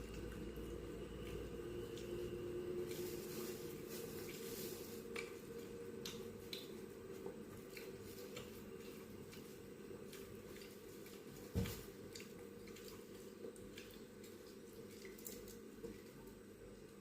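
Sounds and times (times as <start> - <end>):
person chewing wetly: 0.0 - 3.4, 4.1 - 16.5
faint steady hum: 0.0 - 17.0.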